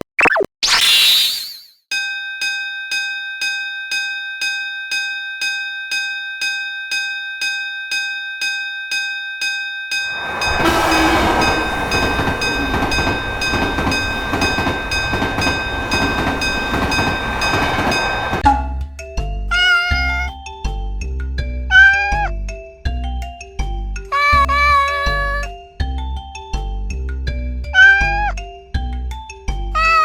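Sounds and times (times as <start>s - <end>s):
level-crossing warning bell: 1.9s - 18.7s, 24.1s - 25.5s, 29.8s - 30.0s
passing train rumble: 10.1s - 18.7s.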